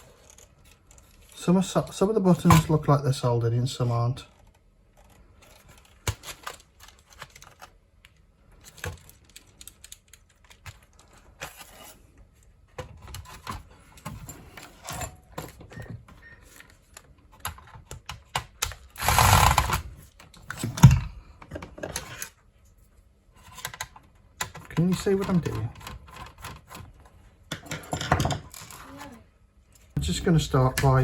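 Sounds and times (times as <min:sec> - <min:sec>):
plastic keyboard parts clicking: 0:05.4 - 0:11.2, 0:16.7 - 0:19.0, 0:23.6 - 0:27.0.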